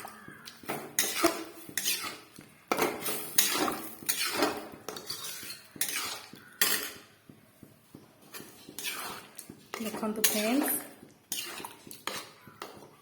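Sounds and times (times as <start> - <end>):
metal spoon stirring in a pan: 0.0 - 13.0.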